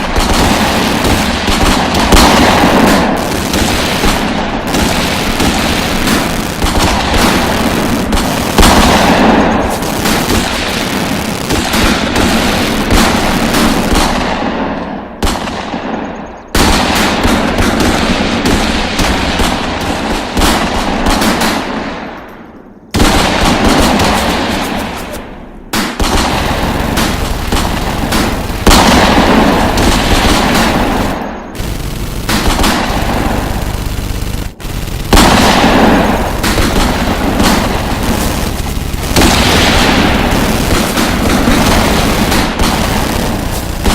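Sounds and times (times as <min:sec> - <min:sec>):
rapid automatic gunfire: 0:00.0 - 0:22.2, 0:23.0 - 0:43.9.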